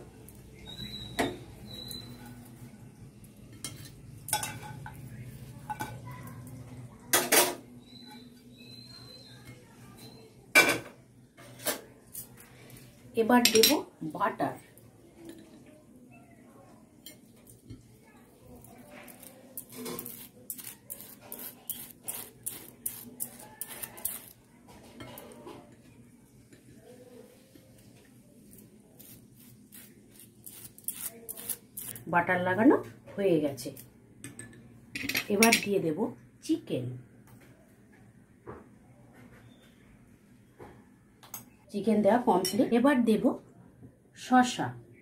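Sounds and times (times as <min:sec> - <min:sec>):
utensils clinking against pan and plates: 0:00.6 - 0:02.4, 0:03.4 - 0:13.9, 0:17.0 - 0:25.9, 0:34.2 - 0:35.8
knife scraping butter on toast: 0:18.6 - 0:24.4, 0:28.5 - 0:32.0.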